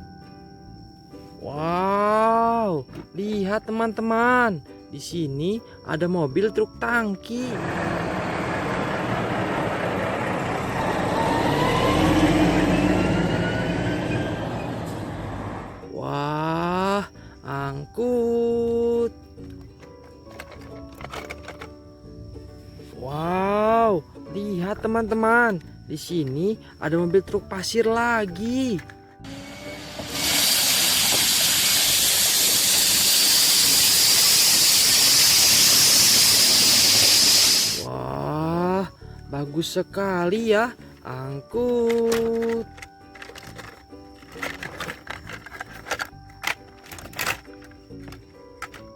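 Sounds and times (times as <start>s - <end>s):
thin whine rising in pitch: 7.6s - 15.8s, 29.2s - 37.8s
vehicle rushing noise: 7.6s - 15.9s
loud steady hiss: 29.3s - 37.9s.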